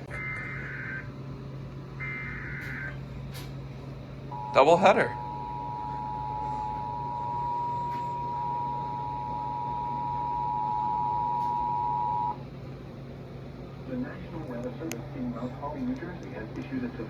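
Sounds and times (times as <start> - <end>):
two-tone attention signal: 4.3 - 12.4.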